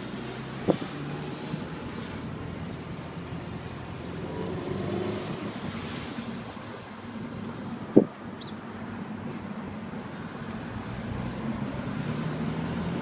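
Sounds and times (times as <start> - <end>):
high scraping brake hiss: 0.0 - 0.6, 5.0 - 8.0
car road and running noise: 0.0 - 13.0.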